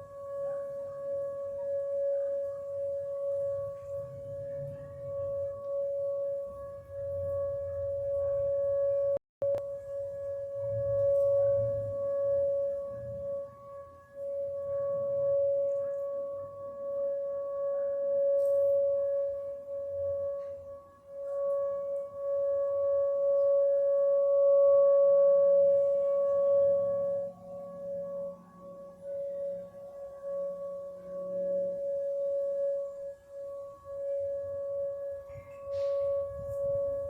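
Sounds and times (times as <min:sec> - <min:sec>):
tornado warning sirens: 0:00.0 - 0:37.0.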